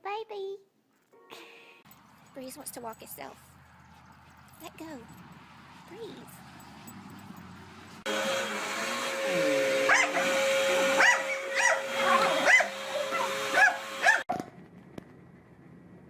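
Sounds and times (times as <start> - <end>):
dog yipping and whining: 9.9 - 10.4, 11.0 - 14.3.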